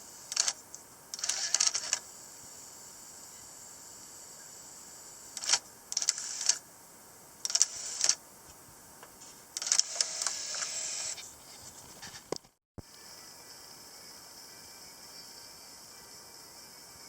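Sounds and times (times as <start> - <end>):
cassette tape transport clicking and whirring: 9.6 - 11.2.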